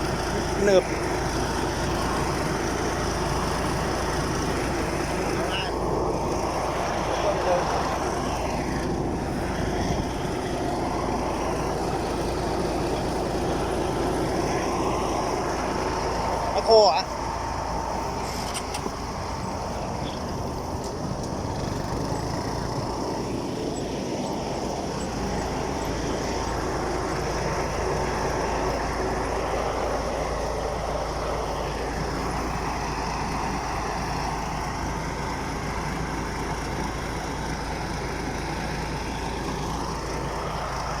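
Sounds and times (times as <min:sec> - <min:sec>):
harvester engine humming: 0:00.0 - 0:41.0.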